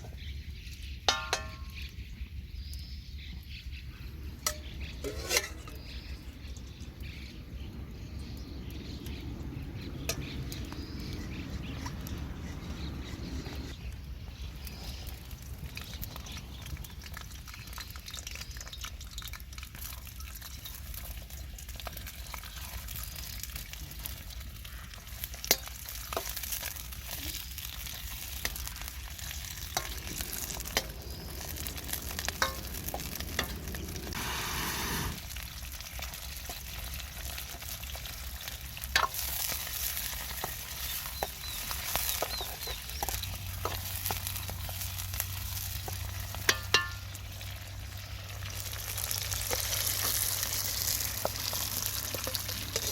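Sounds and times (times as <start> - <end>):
utensil scraping a wok: 4.4 - 6.1, 10.0 - 15.1, 24.8 - 47.2, 48.6 - 52.9
food sizzling in a wok: 14.4 - 52.9.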